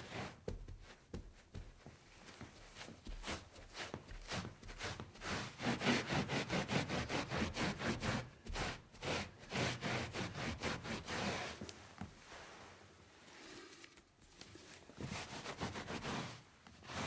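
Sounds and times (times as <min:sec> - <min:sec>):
surface being scrubbed: 0:14.5 - 0:17.0.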